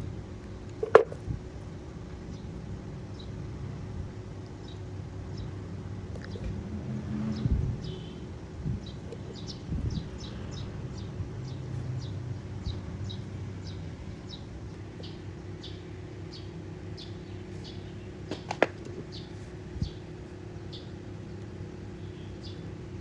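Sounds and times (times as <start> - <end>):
low steady hum: 0.0 - 23.0
small bird chirping: 8.8 - 18.1, 20.6 - 22.7.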